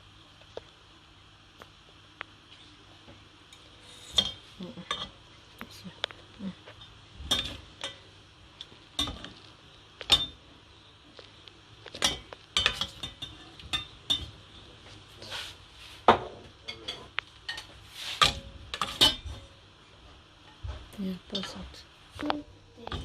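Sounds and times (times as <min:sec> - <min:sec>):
utensils clattering against pots: 0:12.0 - 0:14.4, 0:16.3 - 0:19.5.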